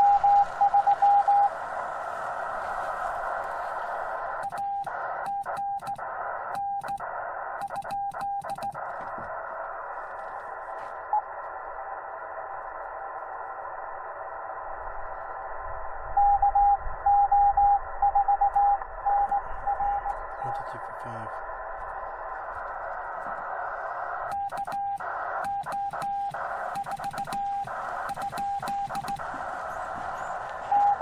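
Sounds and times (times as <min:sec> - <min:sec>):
morse code tone: 0:00.0 - 0:01.5, 0:04.4 - 0:06.0, 0:07.6 - 0:08.8, 0:24.3 - 0:29.2, 0:30.6 - 0:31.0
receiver hiss: 0:00.0 - 0:31.0.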